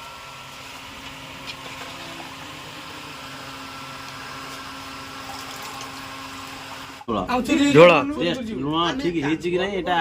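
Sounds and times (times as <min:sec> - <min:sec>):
mechanical hum with hiss: 0:00.0 - 0:07.3.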